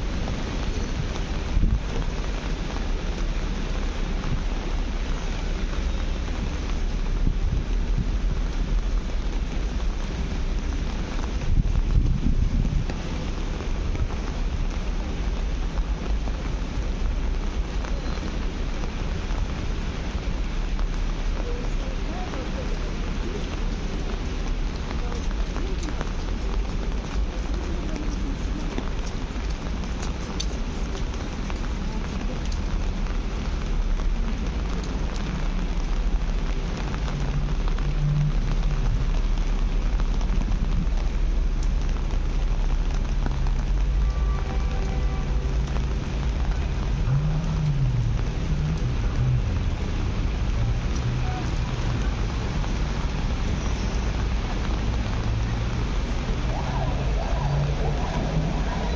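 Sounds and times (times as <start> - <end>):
rain on a street: 0.0 - 58.9
wind rumble on microphone: 0.0 - 58.9
low rumble: 54.3 - 58.9.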